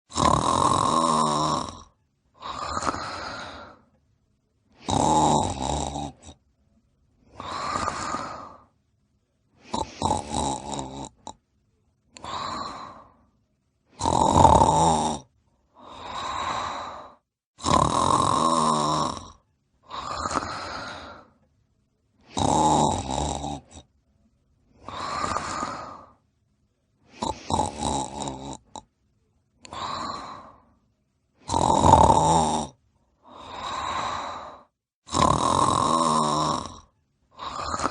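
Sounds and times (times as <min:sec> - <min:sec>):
person snoring: 0:00.1 - 0:03.9, 0:04.7 - 0:06.4, 0:07.2 - 0:08.7, 0:09.6 - 0:11.4, 0:12.1 - 0:13.3, 0:13.9 - 0:21.4, 0:22.2 - 0:23.9, 0:24.7 - 0:26.2, 0:27.0 - 0:28.9, 0:29.6 - 0:30.7, 0:31.4 - 0:37.9.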